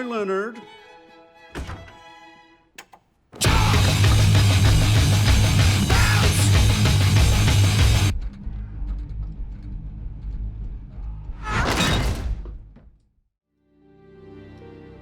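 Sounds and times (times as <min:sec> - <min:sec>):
heavy metal music with guitars: 0:03.4 - 0:08.1.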